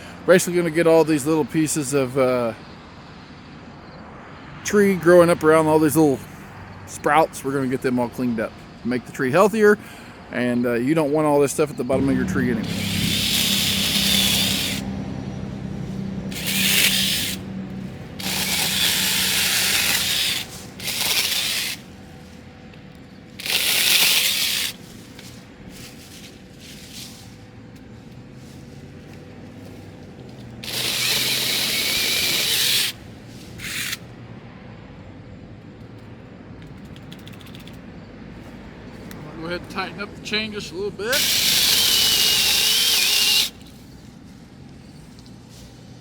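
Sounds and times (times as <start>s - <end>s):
mini chainsaw cutting: 11.9s - 14.9s, 16.3s - 22.3s, 23.3s - 26.0s, 30.4s - 33.0s, 41.1s - 43.7s.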